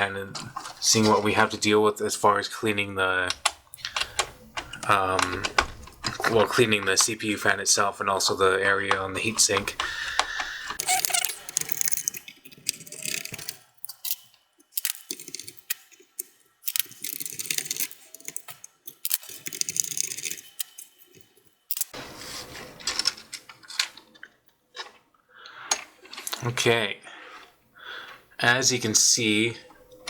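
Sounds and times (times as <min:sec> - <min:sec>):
plastic and metal parts rattling: 0:00.0 - 0:01.5, 0:03.2 - 0:25.0.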